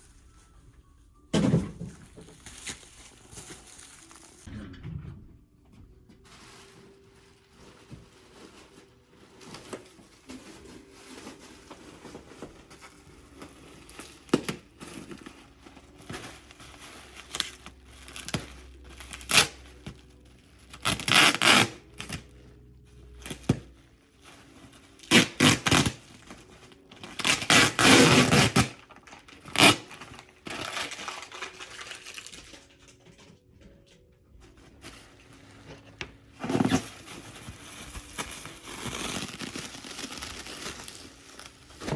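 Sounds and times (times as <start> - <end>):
packing material rustling: 1.8 - 4.5, 6.2 - 22.3, 23.0 - 33.0, 34.4 - 41.9
packing material tearing: 2.2 - 4.5, 6.3 - 22.3, 23.1 - 33.0, 34.8 - 41.9.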